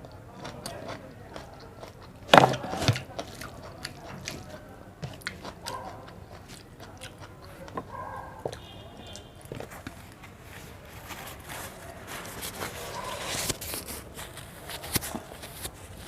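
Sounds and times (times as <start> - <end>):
chewing and wet mouth clicks: 0.0 - 2.3, 3.0 - 9.3.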